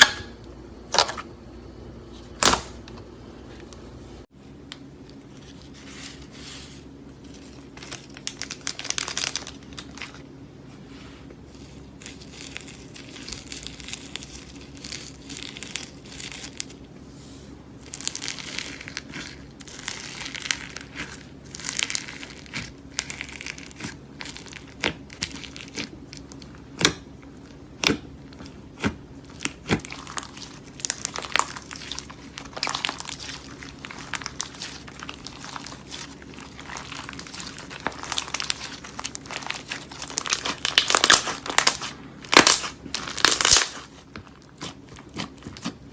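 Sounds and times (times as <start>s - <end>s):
slime crackling and crinkling: 5.1s - 10.4s, 11.4s - 16.9s, 17.8s - 45.9s
slime popping: 17.8s - 45.9s.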